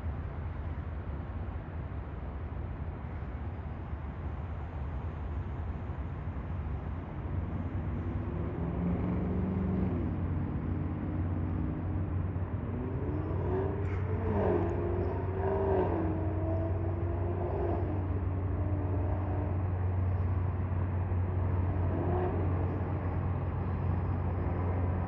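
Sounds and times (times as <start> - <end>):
engine revving: 8.3 - 20.4, 21.2 - 25.0.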